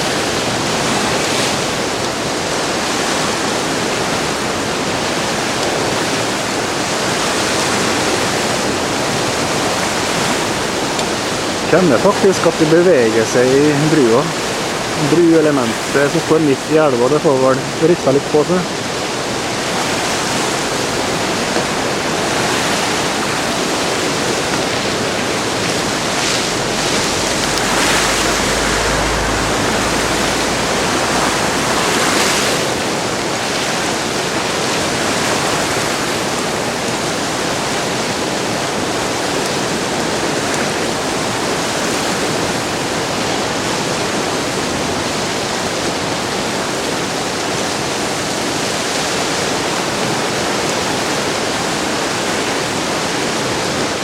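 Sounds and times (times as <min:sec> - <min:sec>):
river rushing: 0:00.0 - 0:54.0
deep rumble: 0:24.3 - 0:36.8.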